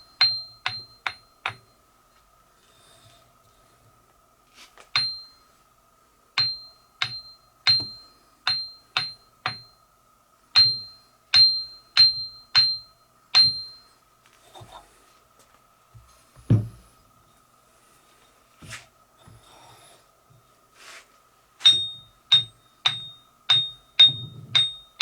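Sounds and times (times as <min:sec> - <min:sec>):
grinding wheel taps and rings: 0:00.0 - 0:01.9, 0:05.0 - 0:05.4, 0:06.4 - 0:09.9, 0:10.6 - 0:13.9, 0:21.6 - 0:25.0
dull thump: 0:16.4 - 0:16.9.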